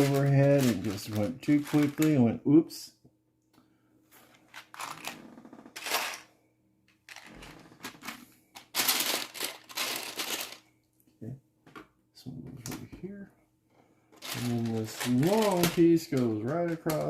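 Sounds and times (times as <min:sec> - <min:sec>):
plastic bricks clicking and rattling: 0:07.1 - 0:10.6, 0:14.2 - 0:17.0.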